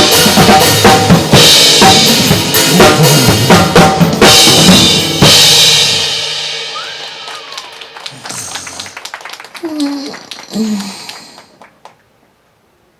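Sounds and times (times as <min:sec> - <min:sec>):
drum kit playing: 0:00.0 - 0:09.6.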